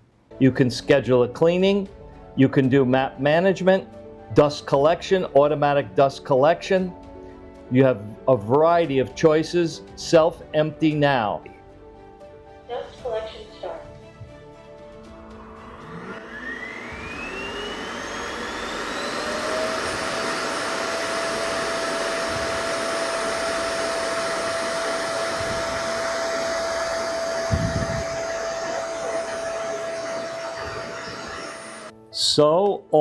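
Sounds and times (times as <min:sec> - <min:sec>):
suction motor whining: 0:14.1 - 0:31.9.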